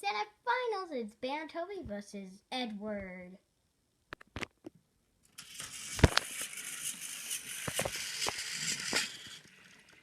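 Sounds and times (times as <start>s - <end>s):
plastic toys scraping and clacking: 5.3s - 10.0s.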